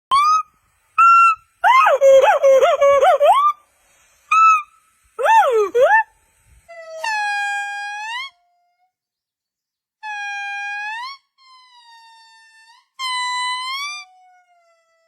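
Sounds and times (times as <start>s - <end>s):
monkey calling: 0.1s - 3.6s, 4.3s - 6.1s.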